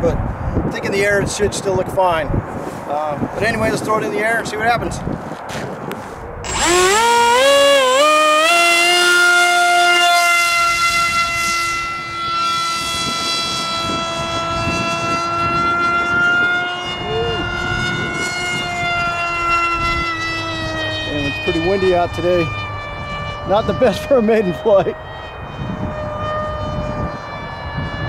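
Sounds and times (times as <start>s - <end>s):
wind rumbling on microphone: 0.0s - 28.0s
electric motor high-pitched whine: 6.4s - 28.0s.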